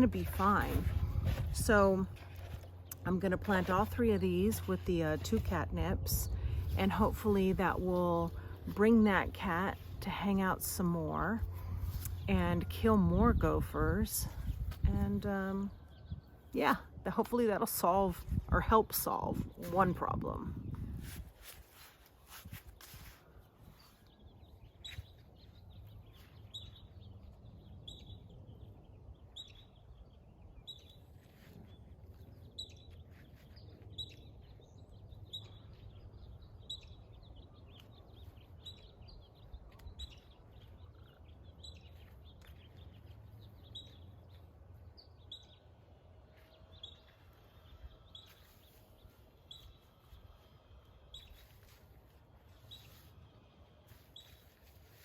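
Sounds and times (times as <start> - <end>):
steady low rumble: 0.0 - 21.5.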